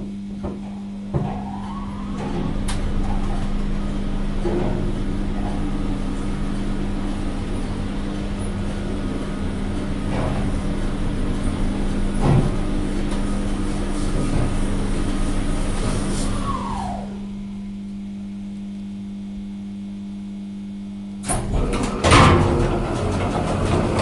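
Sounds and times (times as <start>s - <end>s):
elevator rumble: 0.0s - 18.1s, 21.2s - 24.0s
elevator motor hum: 0.0s - 24.0s.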